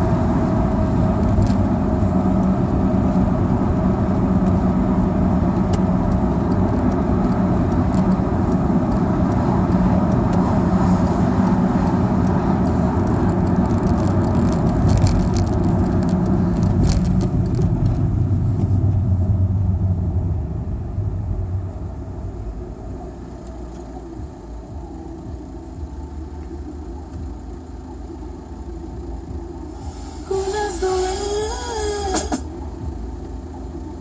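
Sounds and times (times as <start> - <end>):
car engine hum: 0.0 - 34.0
road noise: 0.0 - 34.0.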